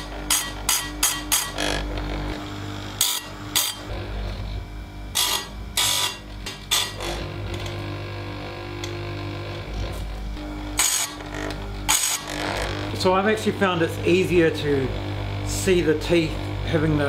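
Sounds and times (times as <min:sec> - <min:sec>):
grinding wheel on chain teeth: 0:00.0 - 0:02.0
chain grinder humming: 0:00.0 - 0:17.0.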